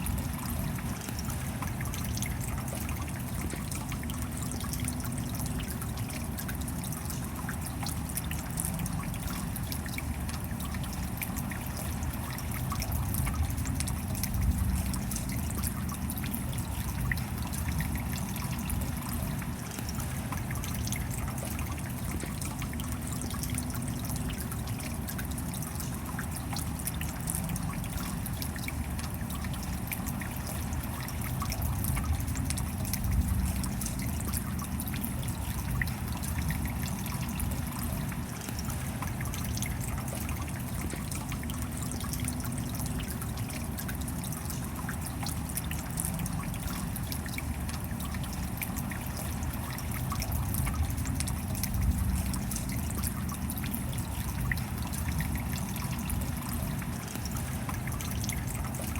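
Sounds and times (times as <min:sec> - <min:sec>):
steady rain falling: 0:00.0 - 0:58.9
water trickling: 0:00.0 - 0:58.9.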